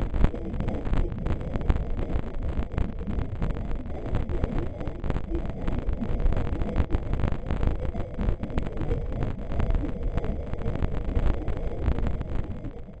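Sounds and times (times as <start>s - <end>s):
continuous crackling: 0.0s - 13.0s
deep rumble: 0.0s - 13.0s.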